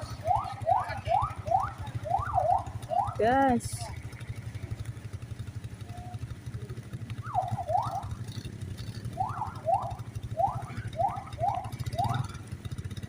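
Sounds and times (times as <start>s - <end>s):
vehicle engine idling: 0.0s - 13.0s
electronic siren sweeping upward: 7.2s - 8.1s, 9.2s - 12.3s.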